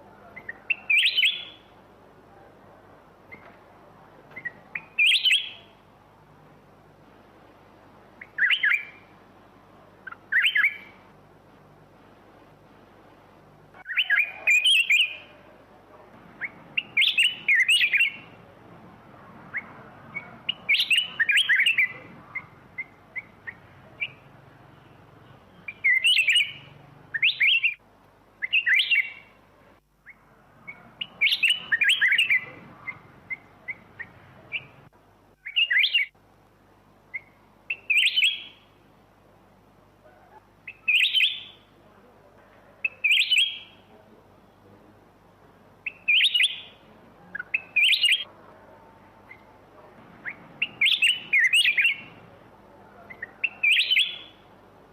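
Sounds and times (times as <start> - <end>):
bird warbling phrases: 45.9 - 48.3.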